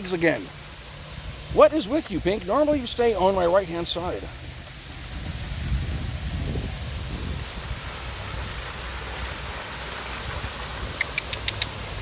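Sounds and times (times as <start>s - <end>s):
waterfall rushing: 0.0s - 12.0s
sharp clicks: 11.0s - 11.8s.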